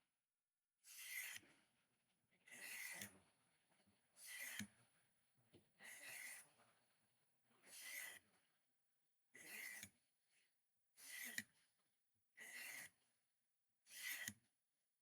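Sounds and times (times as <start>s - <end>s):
knife scraping on sharpener: 1.0s - 1.4s, 4.3s - 4.7s, 7.7s - 8.2s, 9.4s - 9.9s, 11.0s - 11.4s, 12.4s - 12.9s, 13.9s - 14.4s.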